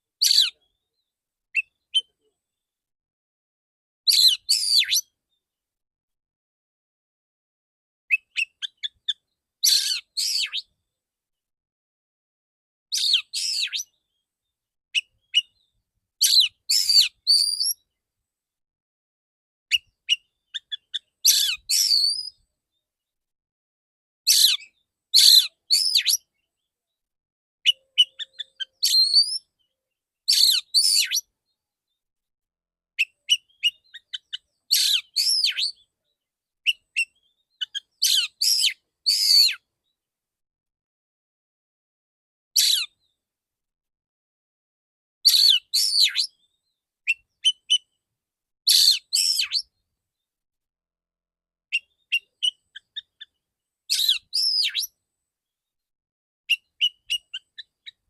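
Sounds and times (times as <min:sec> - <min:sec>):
bird singing whistled notes: 0:04.1 - 0:05.2, 0:08.1 - 0:10.7, 0:12.9 - 0:14.1, 0:15.0 - 0:17.8, 0:19.7 - 0:22.5, 0:24.3 - 0:26.6, 0:27.7 - 0:31.3, 0:33.0 - 0:35.9, 0:36.7 - 0:39.6, 0:45.3 - 0:47.9, 0:48.7 - 0:49.7, 0:51.7 - 0:55.0, 0:56.5 - 0:58.0.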